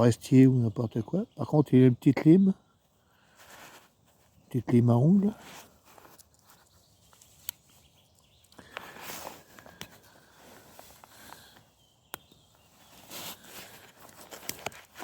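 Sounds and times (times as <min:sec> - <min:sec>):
hands and clothing rustling: 0:03.3 - 0:15.0.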